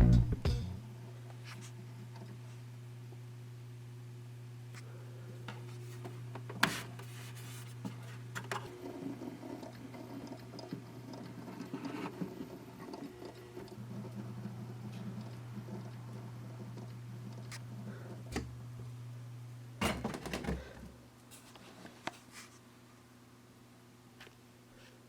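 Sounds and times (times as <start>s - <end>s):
hard drives humming: 0.0s - 22.1s
hard drive ticking chatter: 9.5s - 17.7s.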